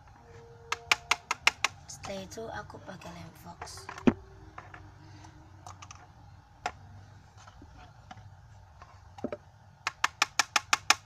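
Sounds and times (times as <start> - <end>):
fast hard taps: 9.2 - 11.0.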